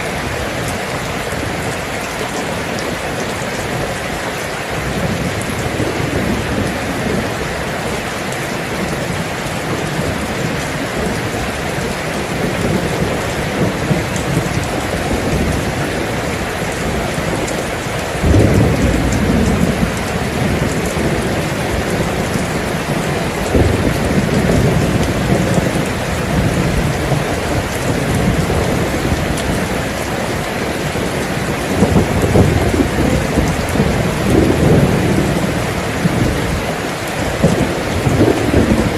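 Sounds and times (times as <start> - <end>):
heavy rain falling: 0.0 - 38.9
thunder rumbling: 0.0 - 38.9.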